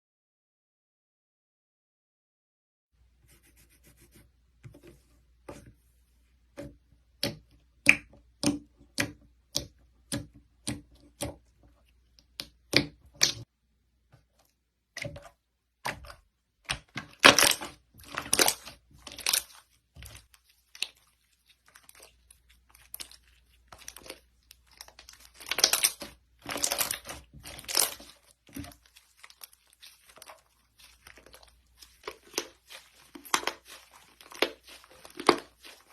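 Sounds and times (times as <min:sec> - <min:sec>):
slime crackling and tearing: 0:17.0 - 0:21.0, 0:21.6 - 0:35.9
slime popping: 0:24.8 - 0:35.9.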